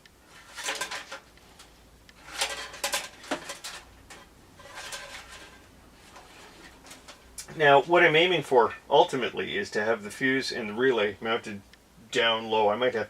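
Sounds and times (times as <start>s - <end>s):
wire rustling through metal panel: 0.0s - 8.8s.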